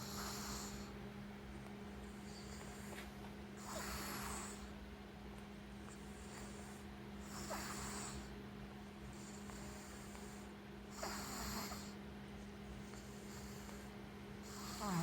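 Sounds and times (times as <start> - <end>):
raspy snoring breaths: 0.0 - 1.0, 2.0 - 4.8, 5.8 - 8.4, 9.0 - 12.0, 12.7 - 15.0
steady low hum: 0.0 - 15.0.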